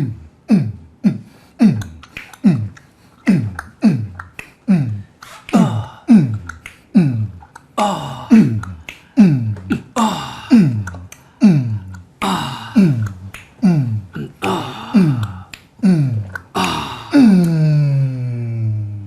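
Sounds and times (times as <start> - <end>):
beatboxed snare and hi-hat: 1.7 - 4.6.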